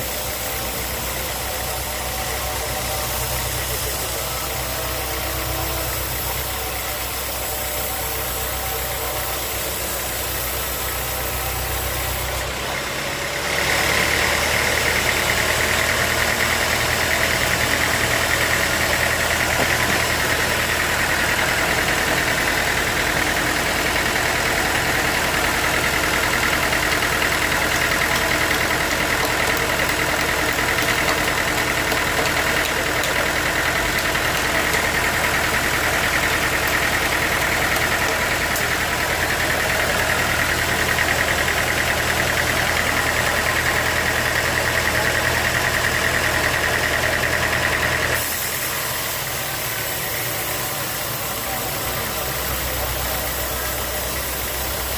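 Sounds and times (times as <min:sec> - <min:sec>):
sawmill engine running: 0:00.0 - 0:54.9.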